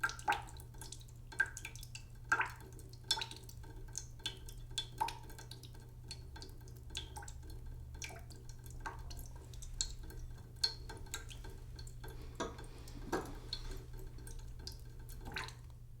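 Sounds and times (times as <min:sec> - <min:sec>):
water dripping into a pot: 0:00.0 - 0:16.0.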